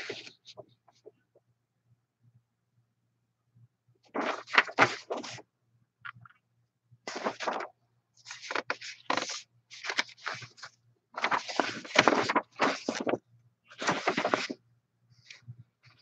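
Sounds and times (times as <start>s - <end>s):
rustling and scraping handling noise: 7.1s - 13.2s, 13.8s - 14.6s.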